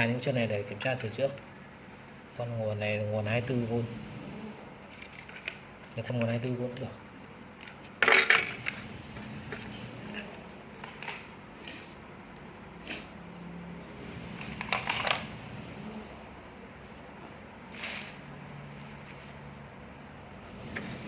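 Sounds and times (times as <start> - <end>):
short hiss: 17.7 - 18.3.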